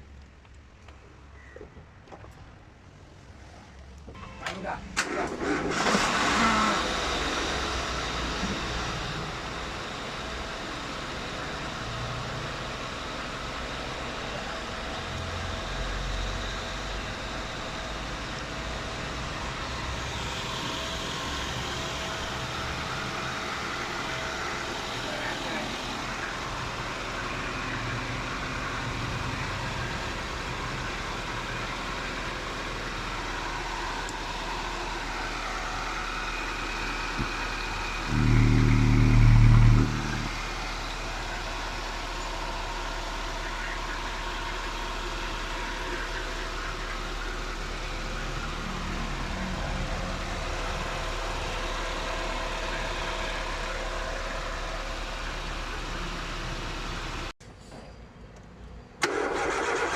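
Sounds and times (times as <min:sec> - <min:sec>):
car engine idling: 0:00.0 - 0:57.4, 0:58.4 - 0:59.9
loud steady pitched tone: 0:37.2 - 0:56.6.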